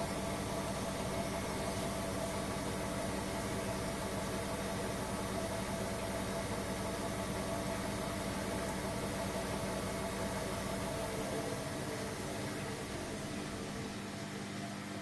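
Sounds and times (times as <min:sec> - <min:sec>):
washing machine motor hum: 0:00.0 - 0:15.0.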